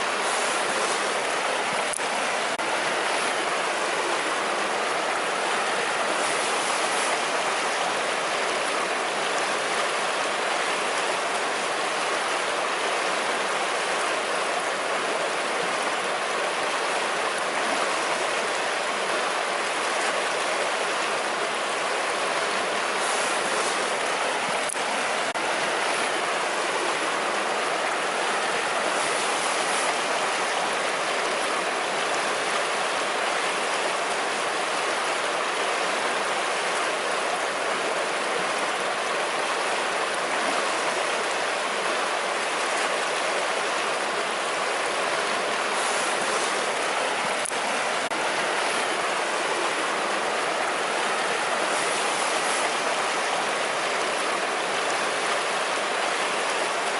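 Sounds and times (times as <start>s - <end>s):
river water rushing: 0.0s - 56.9s.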